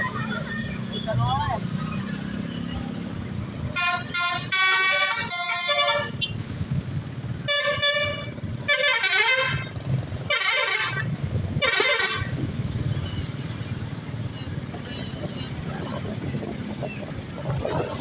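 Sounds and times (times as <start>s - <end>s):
bus engine rumble: 0.0s - 18.0s
traffic: 0.0s - 18.0s
bus multi-tone horn blasts: 3.7s - 6.4s, 7.4s - 12.4s.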